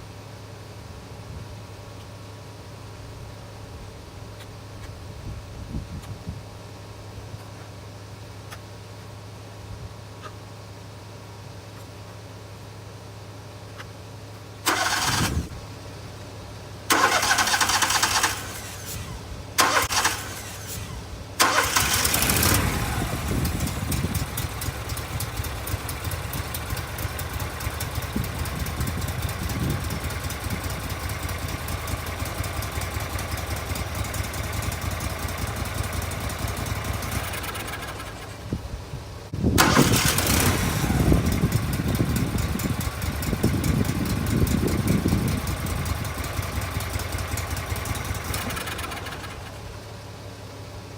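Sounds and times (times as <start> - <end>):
sawmill engine starting and running: 14.6 - 50.9.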